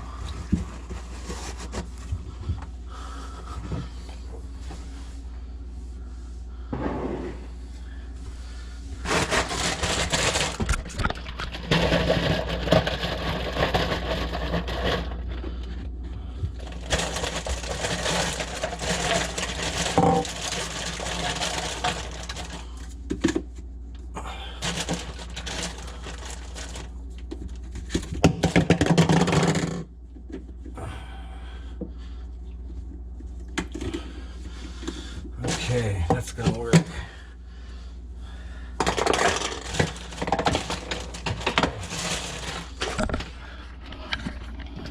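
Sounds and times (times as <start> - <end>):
scraping and clattering plastic pipes: 0.2 - 2.7, 9.0 - 23.6, 24.6 - 30.8, 32.6 - 37.1, 38.8 - 44.9.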